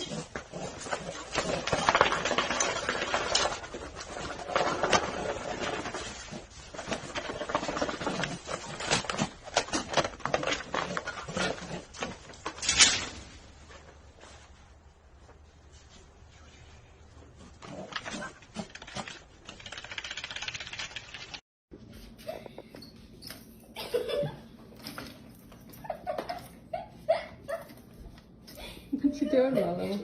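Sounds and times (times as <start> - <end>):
animal clicks and scuffling: 17.4 - 21.4.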